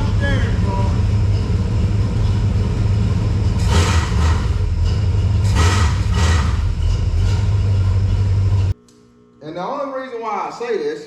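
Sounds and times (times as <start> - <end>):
engine idling: 0.0 - 8.8.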